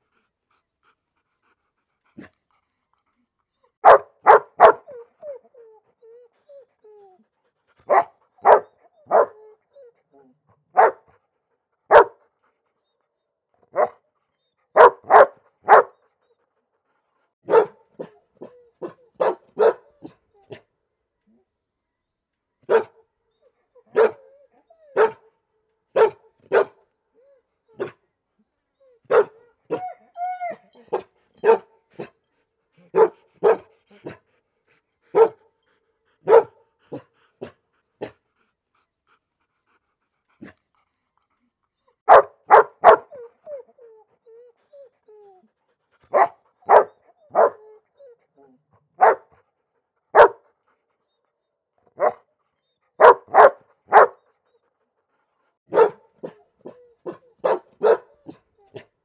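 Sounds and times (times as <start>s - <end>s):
dog barking: 3.8s - 4.9s, 7.9s - 9.4s, 10.7s - 11.1s, 11.9s - 12.2s, 13.7s - 14.0s, 14.8s - 16.0s, 17.5s - 18.1s, 18.8s - 19.9s, 22.7s - 23.0s, 23.9s - 24.2s, 25.0s - 25.2s, 26.0s - 26.8s, 29.1s - 29.4s, 30.9s - 31.7s, 32.9s - 33.7s, 35.1s - 35.4s, 36.2s - 37.0s, 42.1s - 43.2s, 46.1s - 47.6s, 49.0s - 49.3s, 50.1s - 50.4s, 52.0s - 52.2s, 53.0s - 54.2s, 55.7s - 56.4s, 57.0s - 58.4s
dog whining: 28.8s - 31.0s.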